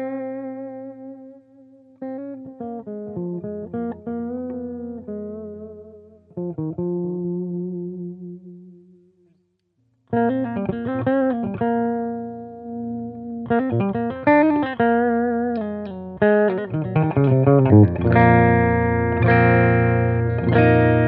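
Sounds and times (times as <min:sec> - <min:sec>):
electric guitar notes: 0:00.0 - 0:09.0, 0:10.1 - 0:21.0
electric guitar chord ringing: 0:10.2 - 0:21.0.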